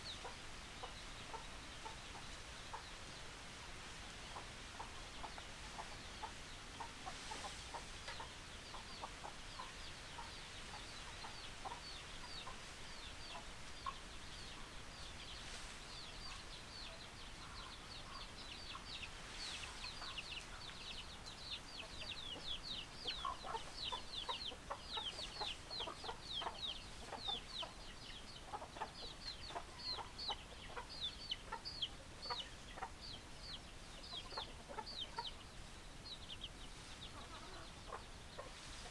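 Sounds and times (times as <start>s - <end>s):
chickens clucking: 0.0s - 3.4s, 4.2s - 38.9s.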